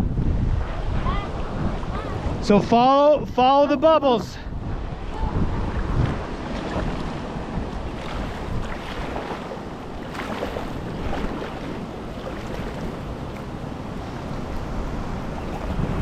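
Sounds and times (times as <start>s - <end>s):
wind buffeting microphone: 0.0s - 16.0s
river water flowing: 4.6s - 16.0s
kayak splashes: 4.8s - 16.0s.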